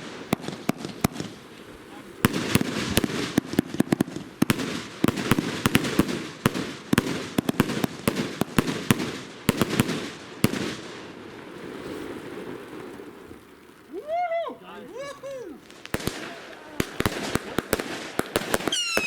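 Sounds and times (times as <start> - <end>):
firework bangs: 0.0 - 12.9, 15.0 - 19.0
firework crackling and hiss: 0.0 - 19.0.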